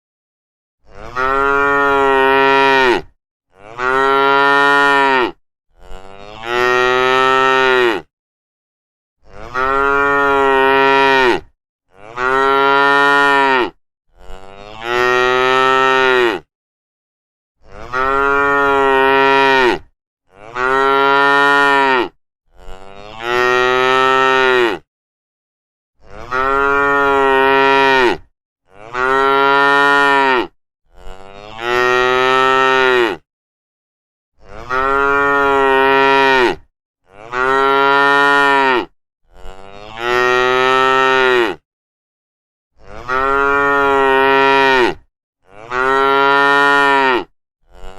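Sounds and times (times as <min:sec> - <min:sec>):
cows mooing: 0:00.8 - 0:08.1, 0:09.2 - 0:16.5, 0:17.8 - 0:24.8, 0:26.1 - 0:33.2, 0:34.5 - 0:41.6, 0:42.9 - 0:47.9.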